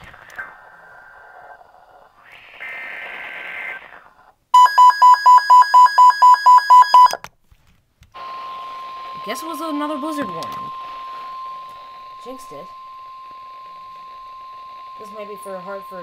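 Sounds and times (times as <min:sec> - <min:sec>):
rapid electronic beeps: 0:02.2 - 0:07.2.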